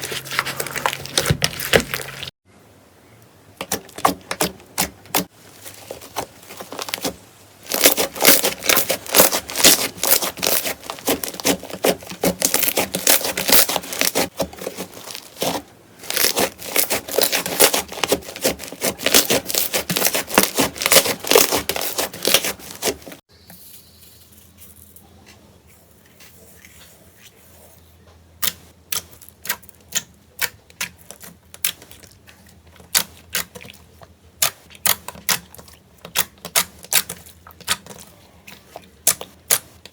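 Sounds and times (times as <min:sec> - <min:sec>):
slime squeezed crackling and popping: 0:07.7 - 0:22.6.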